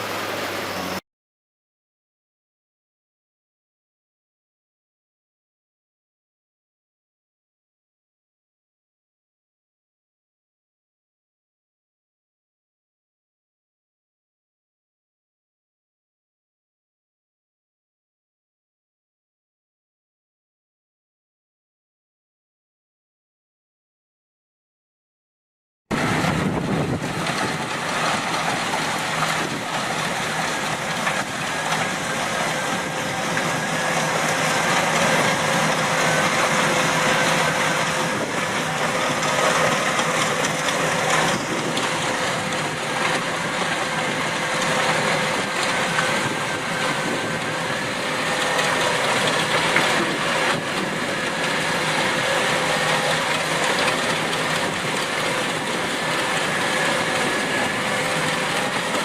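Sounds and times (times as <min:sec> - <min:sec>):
heavy machine engine running: 0:00.0 - 0:01.0, 0:25.9 - 0:59.0
constant whine: 0:25.9 - 0:59.0.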